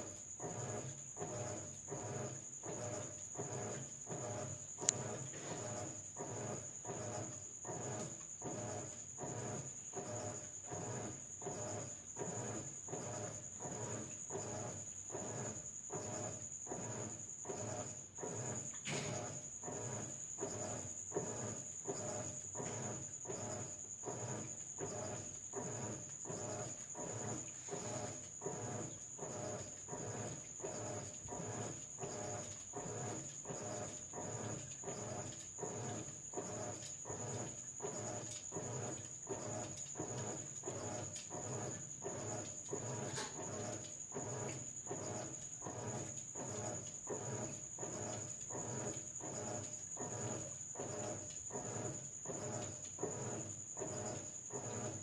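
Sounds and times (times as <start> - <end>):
washing machine agitator swishing water: 0.0 - 55.0.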